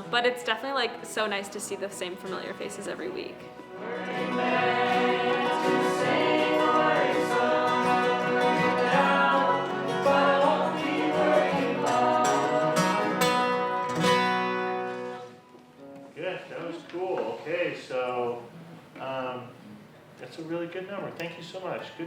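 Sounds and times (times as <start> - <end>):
acoustic guitar and strings: 0.0 - 22.0
people singing together: 3.4 - 15.2.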